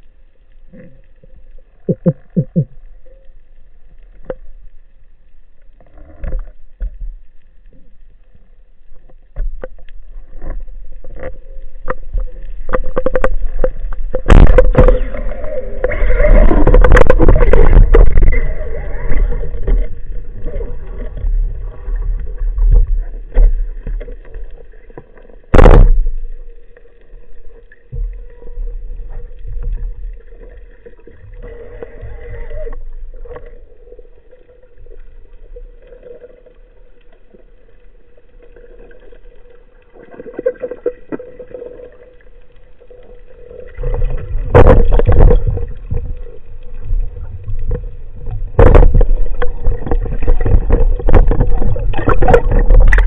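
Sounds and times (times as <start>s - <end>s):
underwater bubbling: 0.0s - 53.0s
knocks and clicks: 1.9s - 2.7s
dense underwater rushing: 9.3s - 53.0s.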